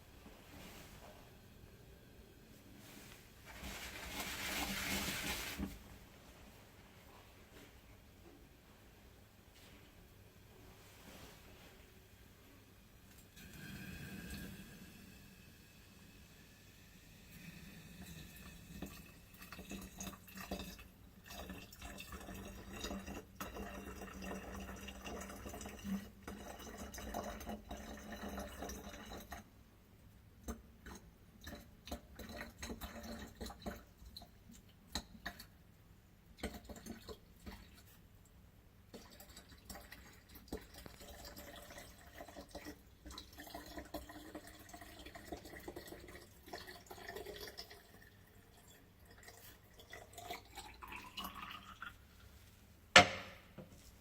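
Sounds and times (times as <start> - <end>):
liquid dripping and bubbling in flask: 17.0 - 29.6, 30.4 - 52.1.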